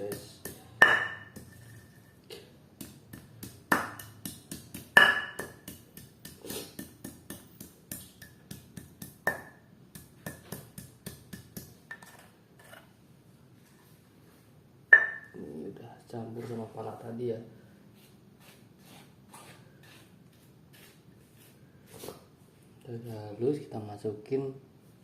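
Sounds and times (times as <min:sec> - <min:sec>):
pestle pounding in a mortar: 0:00.0 - 0:01.6, 0:02.8 - 0:12.2.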